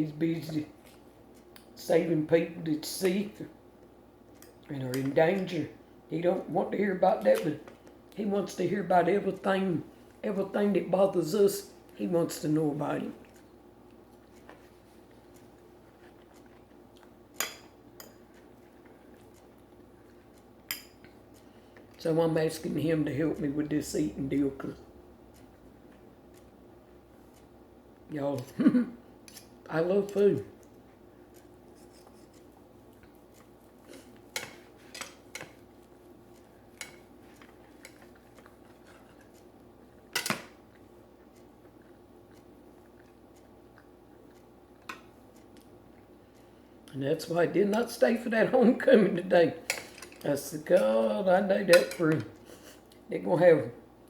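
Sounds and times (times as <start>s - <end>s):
cutlery clinking on plate: 40.2s - 40.6s.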